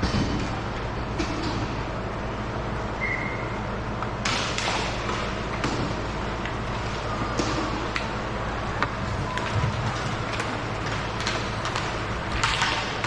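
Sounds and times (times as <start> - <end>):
low arena hum: 0.0 - 13.0
hockey sticks and puck clacking: 4.0 - 13.0.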